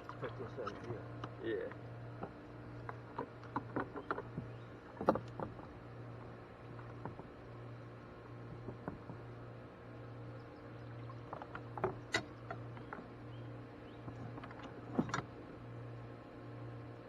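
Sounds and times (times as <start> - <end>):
low steady hum: 0.0 - 17.0
knocks and clicks of gear: 2.2 - 5.8, 11.1 - 13.1, 13.8 - 15.4.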